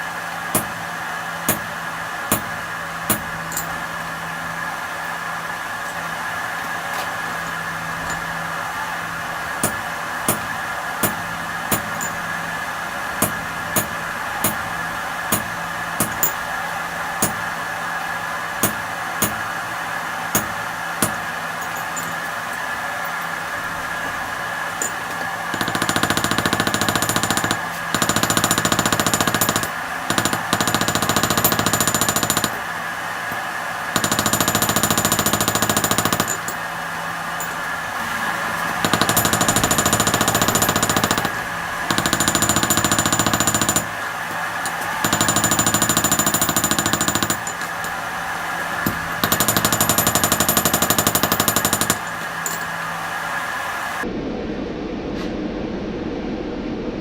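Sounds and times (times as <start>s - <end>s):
steady hum: 0.0s - 57.0s
machine hammering on steel: 0.4s - 3.8s, 9.6s - 12.4s, 13.1s - 16.6s, 17.2s - 17.6s, 18.6s - 19.6s, 20.2s - 23.3s, 24.8s - 52.8s.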